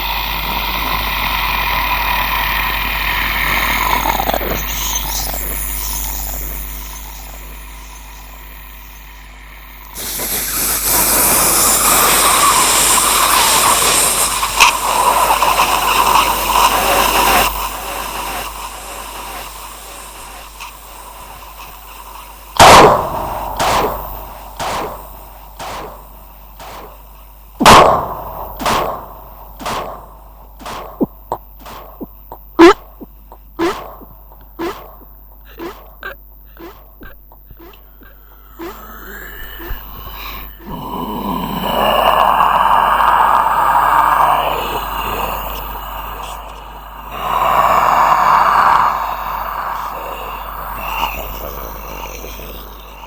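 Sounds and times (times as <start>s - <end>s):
loud rushing hiss: 9.3s - 35.9s, 39.7s - 53.0s
eerie pitched drone: 22.5s - 53.0s
booming hits with echoes: 22.6s - 24.1s, 27.6s - 29.1s.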